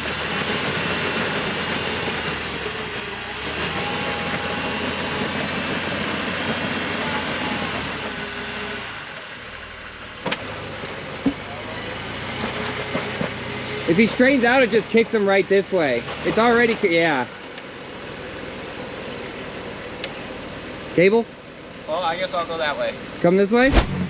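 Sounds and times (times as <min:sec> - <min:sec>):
jeep engine running: 0:00.0 - 0:24.0
sharp click: 0:23.6 - 0:24.0.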